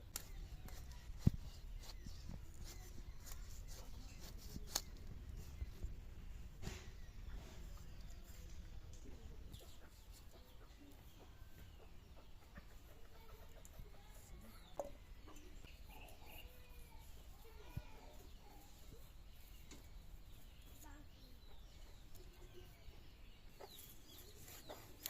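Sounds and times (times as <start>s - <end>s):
chickens clucking: 8.5s - 16.6s.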